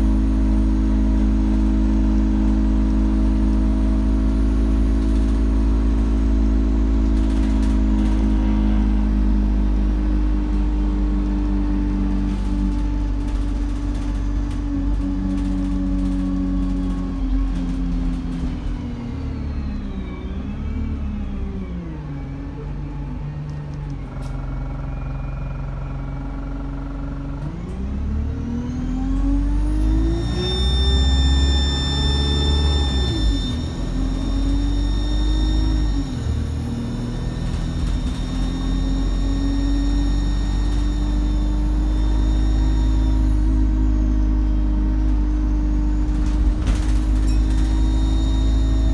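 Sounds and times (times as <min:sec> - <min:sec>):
bus diesel engine running: 0:00.0 - 0:48.9
turbocharger whistling: 0:29.2 - 0:48.9.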